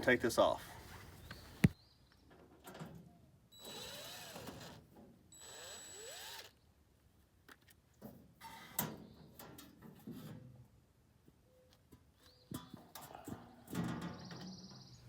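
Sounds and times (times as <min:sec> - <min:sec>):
cordless drill backing out screws: 0:03.6 - 0:04.8.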